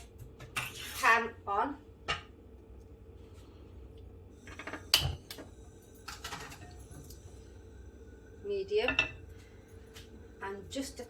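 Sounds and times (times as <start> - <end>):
low kitchen hum: 0.0 - 11.0.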